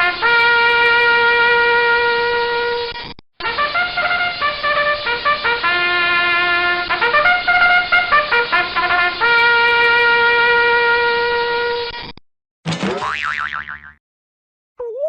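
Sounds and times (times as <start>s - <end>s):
trumpet playing a tune: 0.0s - 11.9s.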